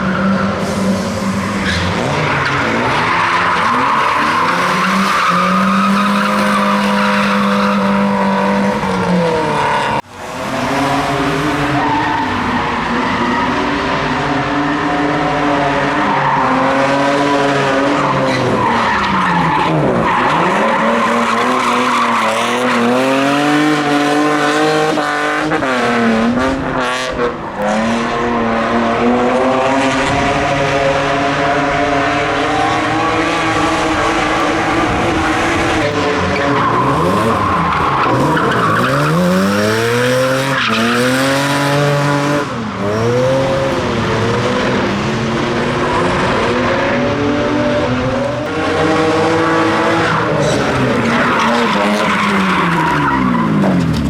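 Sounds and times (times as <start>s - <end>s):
car engine revving hard: 19.7s - 53.9s
tyres squealing on tarmac: 31.6s - 41.8s.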